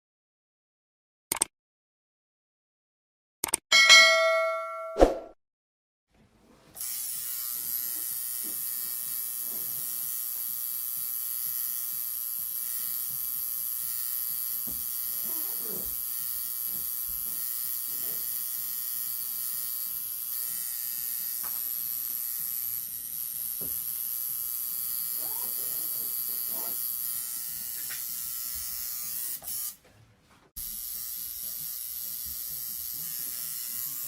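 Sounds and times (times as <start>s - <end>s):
tattoo machine buzzing: 6.8s - 29.8s, 30.6s - 34.0s.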